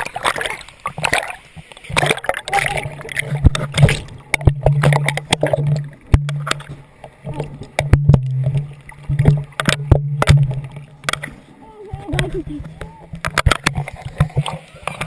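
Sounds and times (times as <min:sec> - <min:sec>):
water splashing and sloshing: 0:00.0 - 0:15.0
low hum: 0:02.8 - 0:13.8
sharp knocks: 0:07.8 - 0:11.3.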